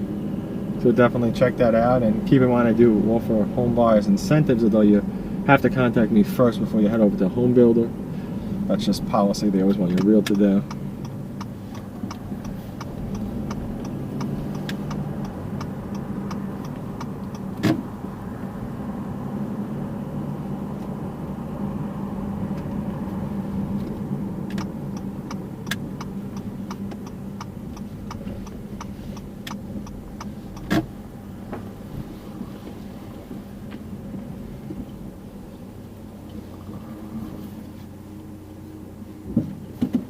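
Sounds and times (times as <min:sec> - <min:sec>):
car engine and road hum: 0:00.0 - 0:40.0
light ticking: 0:09.7 - 0:17.5, 0:24.4 - 0:30.8.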